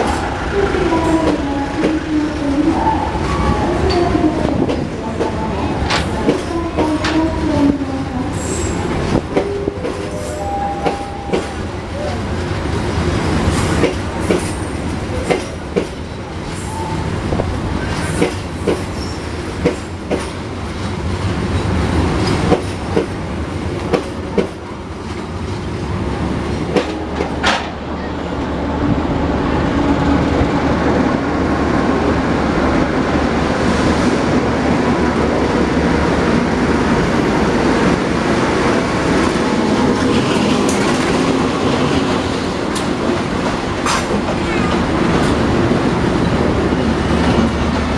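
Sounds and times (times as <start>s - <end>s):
train rumble: 0.0s - 47.9s
train wheels clacking over rail joints: 13.4s - 16.2s, 17.5s - 23.2s, 23.8s - 25.7s, 39.2s - 46.0s.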